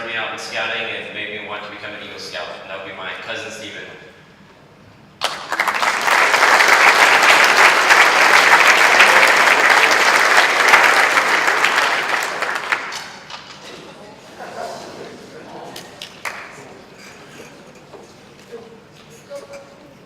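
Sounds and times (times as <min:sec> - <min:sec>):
audience applauding: 0:05.2 - 0:13.6, 0:16.0 - 0:16.7.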